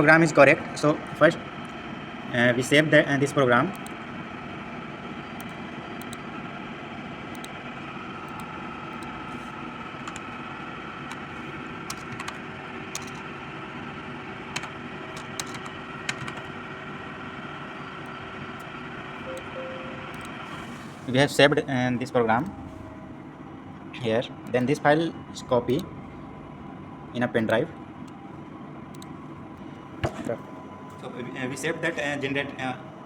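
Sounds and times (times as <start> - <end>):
background hum: 0.0 - 33.0
mouse clicks: 5.4 - 6.2
faint high whine: 17.6 - 33.0.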